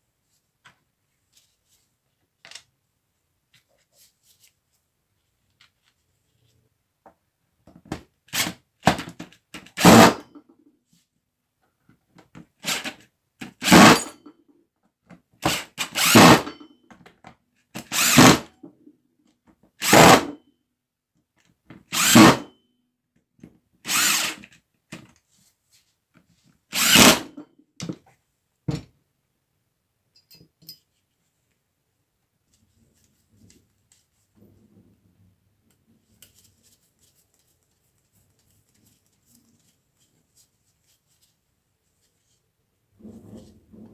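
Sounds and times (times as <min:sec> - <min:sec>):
jigsaw running in bursts: 0:09.8 - 0:10.2, 0:13.6 - 0:14.1, 0:15.5 - 0:16.5, 0:17.8 - 0:18.5, 0:19.8 - 0:20.3, 0:21.9 - 0:22.4, 0:23.9 - 0:24.4, 0:26.7 - 0:27.3.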